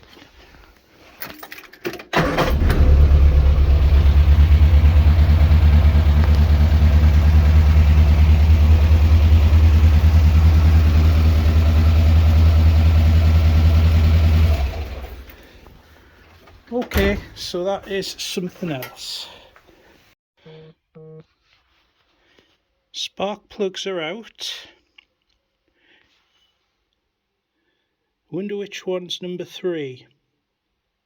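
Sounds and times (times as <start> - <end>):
car engine idling: 2.2 - 15.6.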